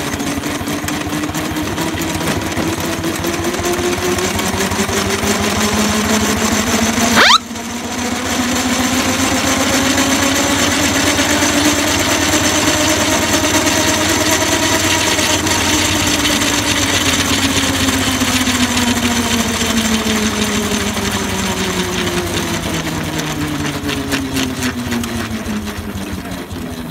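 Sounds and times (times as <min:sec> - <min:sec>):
sharp rising squeal: 0:07.2 - 0:07.5.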